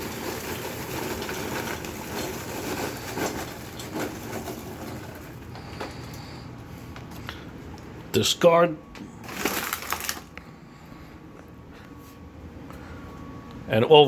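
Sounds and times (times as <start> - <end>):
popcorn poured into bowl: 0.0 - 5.4, 9.2 - 10.3.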